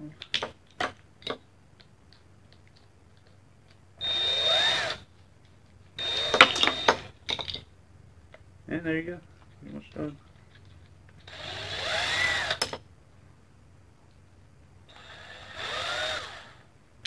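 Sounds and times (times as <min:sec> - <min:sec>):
cordless drill motor whining: 0:04.0 - 0:05.0, 0:06.0 - 0:07.1, 0:11.2 - 0:12.6, 0:14.9 - 0:16.7.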